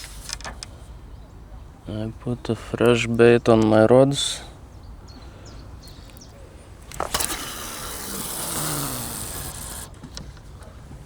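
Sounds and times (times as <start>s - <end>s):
reel click: 6.8s - 10.3s
fishing line hissing off reel: 6.9s - 10.0s.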